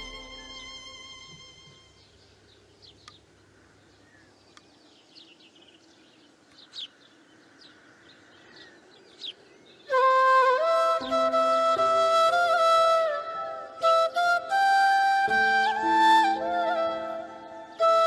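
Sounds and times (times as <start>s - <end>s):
music with sustained melodic notes: 0.0s - 2.2s, 9.9s - 18.0s
low background hiss: 0.0s - 18.0s
small birds chirping: 1.3s - 10.0s.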